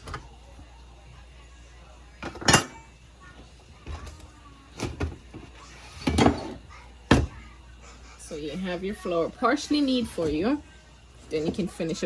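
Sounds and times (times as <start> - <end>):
kitchenware clinking and knocking: 2.2 - 2.9, 3.8 - 7.4, 11.3 - 12.0.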